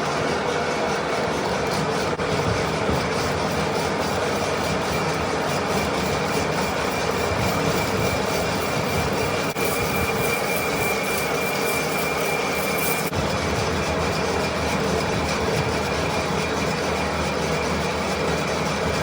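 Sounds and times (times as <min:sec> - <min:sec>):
metal lathe running: 0:00.0 - 0:19.0
high-pitched whine: 0:04.4 - 0:14.5.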